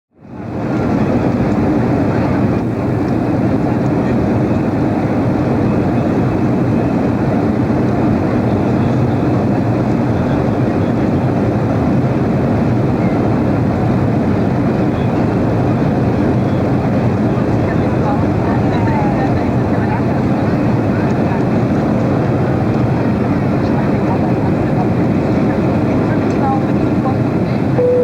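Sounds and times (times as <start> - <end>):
jet engines and airflow in cabin: 0.1 - 28.0.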